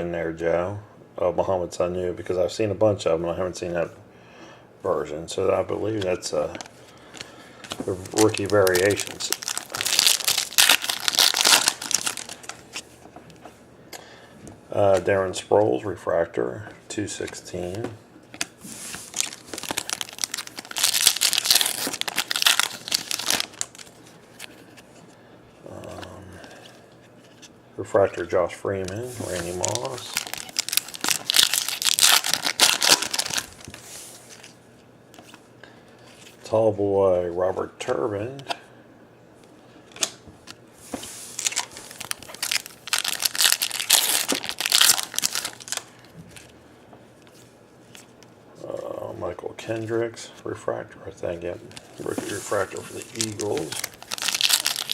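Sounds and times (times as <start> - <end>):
plastic wrapper crinkling: 6.4 - 12.9, 18.3 - 24.9, 28.8 - 34.6, 41.3 - 46.6, 51.6 - 54.9.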